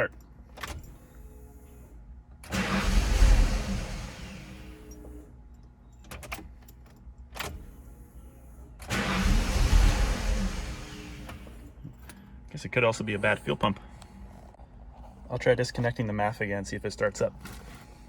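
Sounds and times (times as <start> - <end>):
car engine cranking: 0.0 - 1.1, 2.3 - 5.2, 8.8 - 12.2.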